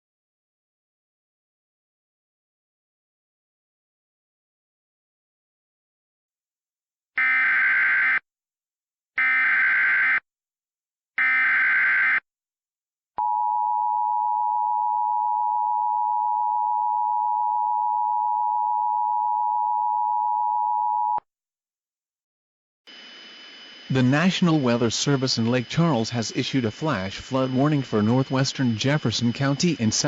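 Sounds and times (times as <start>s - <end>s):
warbling data tone bursts: 22.9s - 30.0s
steady two-tone attention signal: 23.5s - 30.0s.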